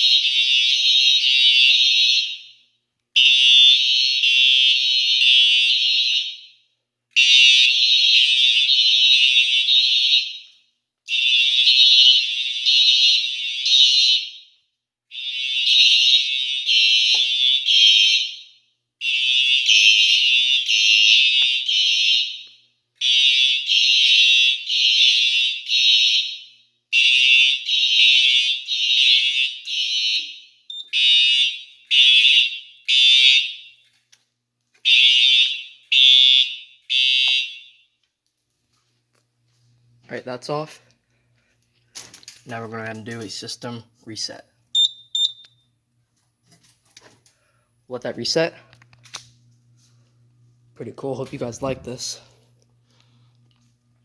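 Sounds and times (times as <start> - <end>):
fire alarm sounders blaring: 0.0 - 34.2, 34.8 - 38.2, 42.0 - 45.8.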